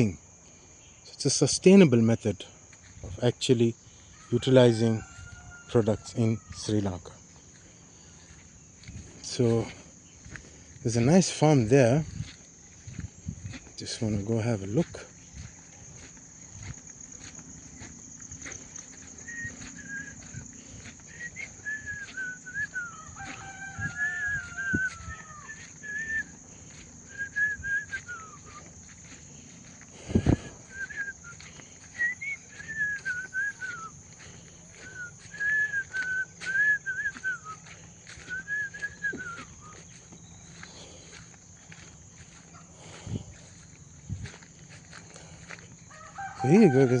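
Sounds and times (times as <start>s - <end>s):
insect drone: 0.0s - 47.0s
chickens calling: 3.1s - 47.0s.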